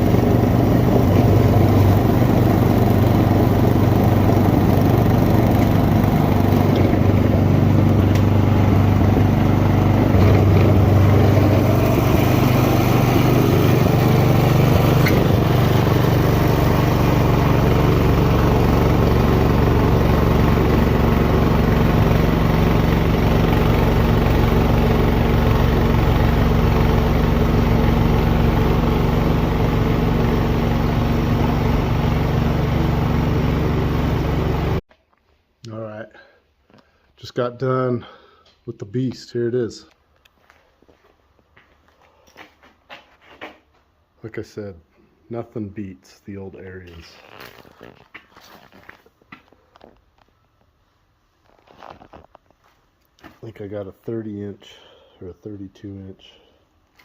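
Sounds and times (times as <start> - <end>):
snowblower engine running: 0.0 - 34.8.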